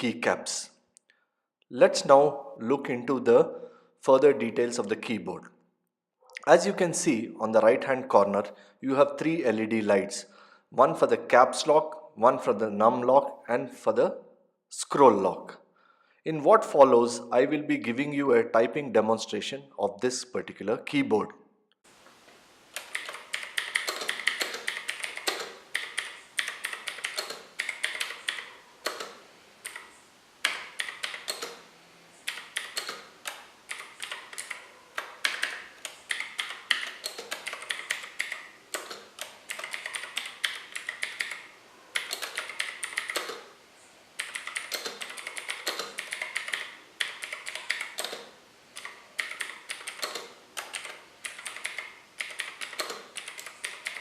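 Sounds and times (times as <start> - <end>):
clicky mechanical keyboard typing: 22.8 - 43.5, 44.2 - 54.0.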